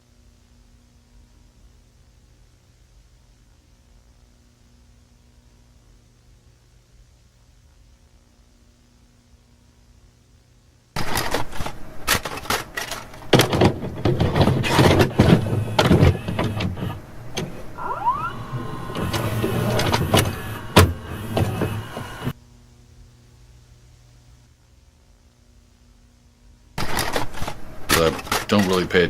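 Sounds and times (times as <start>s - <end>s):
knocks clicks and rattles: 11.0s - 22.3s, 26.8s - 29.0s
short rising squeak: 13.8s - 22.3s.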